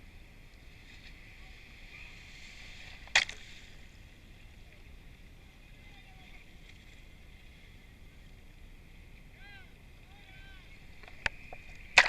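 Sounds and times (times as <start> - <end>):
sharp crack: 2.9 - 3.7, 11.0 - 12.0.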